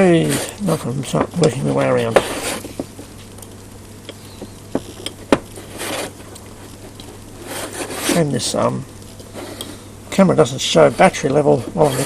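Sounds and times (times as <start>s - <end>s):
steady low hum: 0.0s - 12.0s
short rustle: 5.5s - 8.4s.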